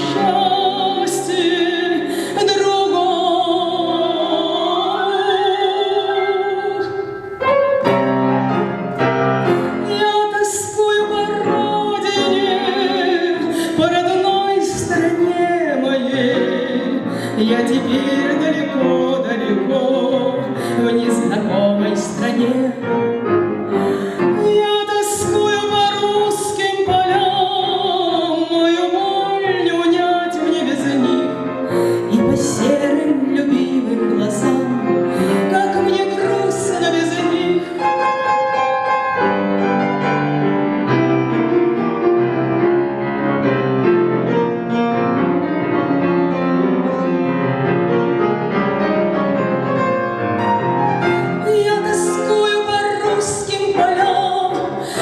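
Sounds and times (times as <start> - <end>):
woman singing with vibrato: 0.0 - 7.9, 9.8 - 23.0, 23.8 - 38.3, 51.3 - 55.0
grand piano: 0.0 - 55.0.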